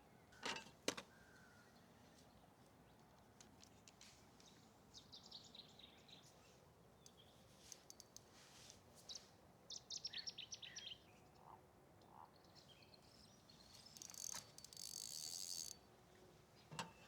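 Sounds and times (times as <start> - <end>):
faint clicks: 7.0 - 8.8, 13.7 - 15.8.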